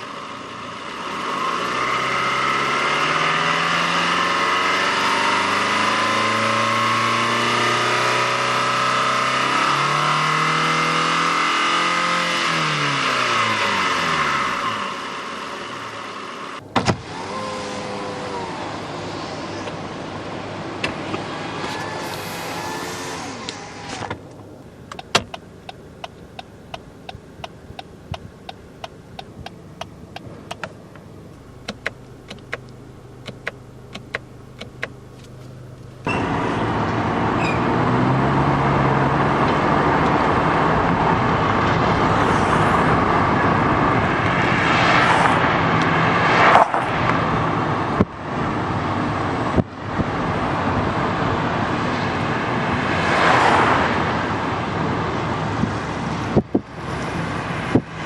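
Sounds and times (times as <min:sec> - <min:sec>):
car road and engine noise: 0:00.0 - 0:58.0
power window motor running: 0:21.0 - 0:37.6
turn signal relay ticking: 0:24.3 - 0:36.1.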